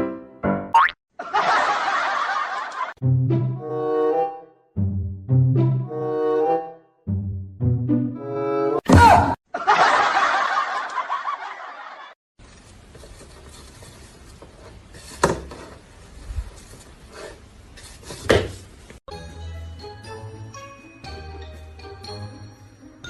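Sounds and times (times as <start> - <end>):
people laughing: 1.2 - 3.0, 9.5 - 12.2.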